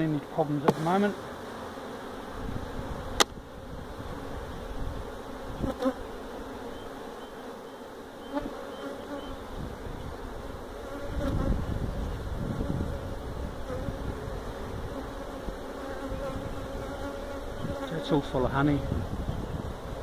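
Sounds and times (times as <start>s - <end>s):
honeybees buzzing: 0.0s - 20.0s
sharp click: 3.2s - 3.4s.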